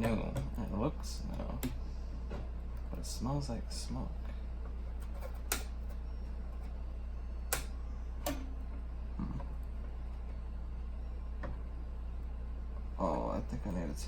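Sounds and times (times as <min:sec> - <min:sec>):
steady low hum: 0:00.0 - 0:14.0
computer parts clicking and tapping: 0:04.9 - 0:06.8, 0:07.5 - 0:08.8.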